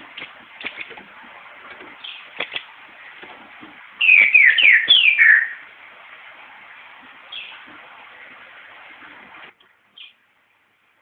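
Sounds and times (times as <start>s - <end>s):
bird short high chips: 4.0s - 5.6s.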